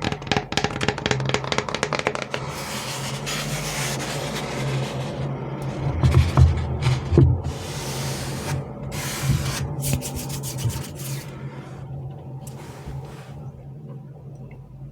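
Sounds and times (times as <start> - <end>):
low steady hum: 0.4 - 14.9.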